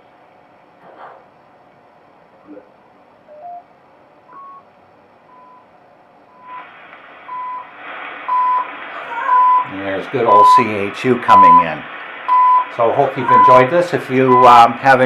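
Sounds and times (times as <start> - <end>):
radio band hiss: 6.3 - 15.0
short radio beeps: 7.3 - 7.7, 8.3 - 13.6, 14.3 - 14.6.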